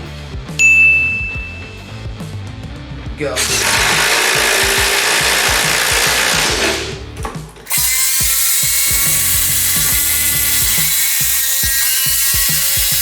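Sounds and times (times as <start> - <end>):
background music: 0.0 - 13.0
impact drivers hammering: 3.4 - 13.0.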